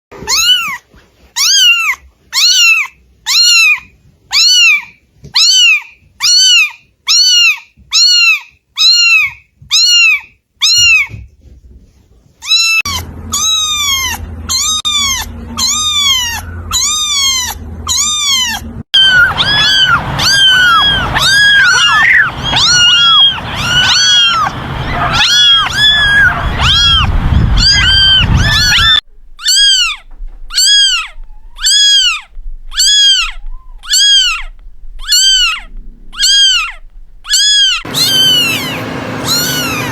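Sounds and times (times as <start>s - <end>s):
cats meowing: 0.1s - 11.3s, 12.4s - 39.9s
low hum: 12.9s - 39.9s.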